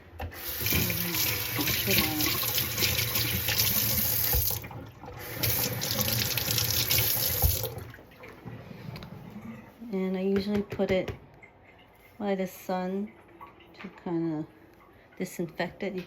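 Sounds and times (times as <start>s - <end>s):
tap water running into sink: 0.2s - 8.0s.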